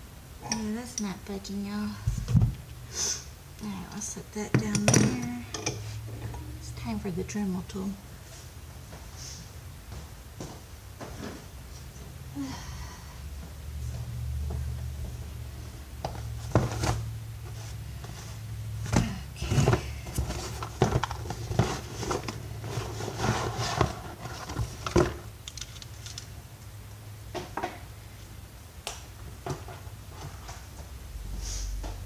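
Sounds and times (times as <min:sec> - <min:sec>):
low steady hum: 0:00.0 - 0:32.0.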